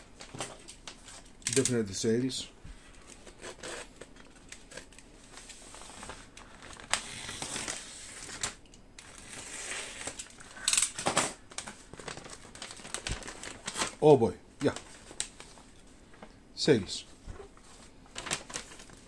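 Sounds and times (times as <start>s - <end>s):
plastic packaging crinkling: 3.0s - 16.3s, 17.4s - 19.0s.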